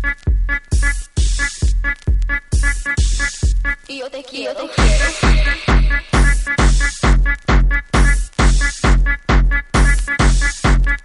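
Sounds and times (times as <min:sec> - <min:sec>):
kick drum: 0:00.0 - 0:03.7, 0:04.8 - 0:11.0
synth stabs: 0:04.8 - 0:08.7.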